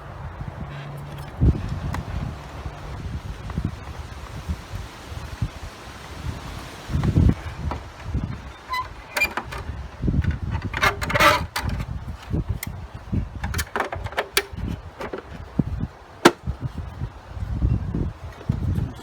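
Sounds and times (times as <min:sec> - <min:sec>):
plastic vacuum parts clicking: 0:08.7 - 0:12.8, 0:13.4 - 0:15.4, 0:16.2 - 0:16.4.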